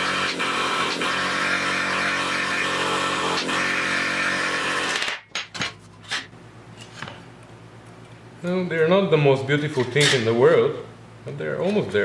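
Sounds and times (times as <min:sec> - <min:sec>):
power tool motor running: 0:00.0 - 0:05.1.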